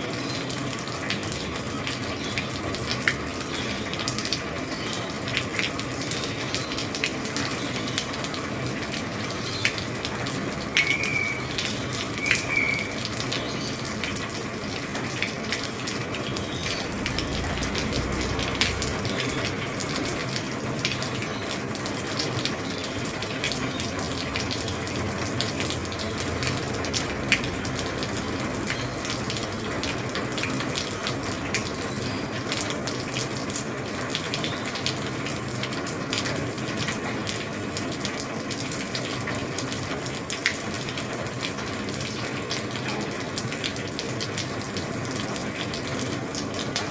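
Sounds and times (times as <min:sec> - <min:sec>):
rain on a roof: 0:00.0 - 0:46.9
high chirps: 0:10.7 - 0:13.7
low rumble: 0:16.0 - 0:21.2.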